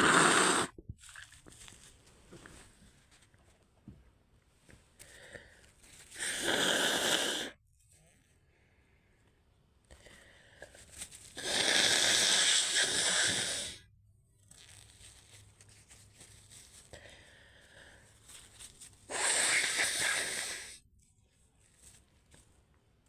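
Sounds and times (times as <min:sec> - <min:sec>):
woman exhaling through nose: 0:00.0 - 0:00.8, 0:06.2 - 0:07.6, 0:11.4 - 0:13.8, 0:19.1 - 0:20.8
soft breathing: 0:04.8 - 0:07.6, 0:08.3 - 0:11.2, 0:16.5 - 0:20.8.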